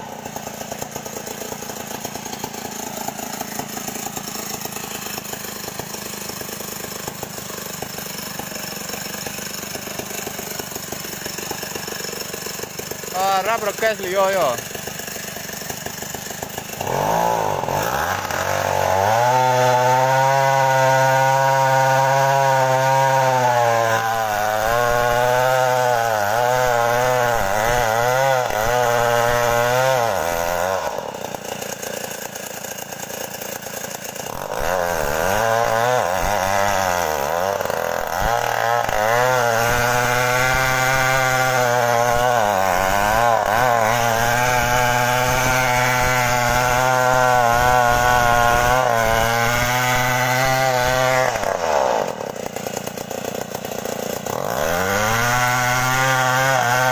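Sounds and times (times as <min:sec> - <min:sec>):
chainsaw cutting wood: 0:00.0 - 0:56.9.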